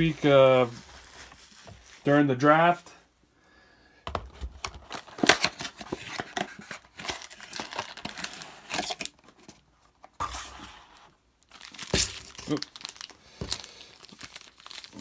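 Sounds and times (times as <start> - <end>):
packaging tearing and crinkling: 0.0 - 2.1, 4.8 - 9.2, 11.5 - 15.0.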